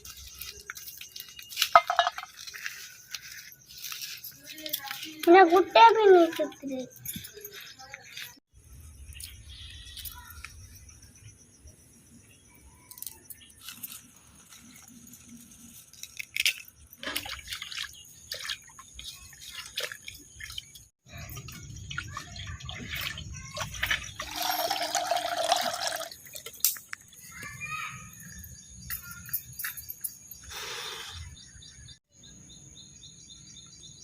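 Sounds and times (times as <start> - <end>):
water dripping and splashing: 16.0 - 27.0.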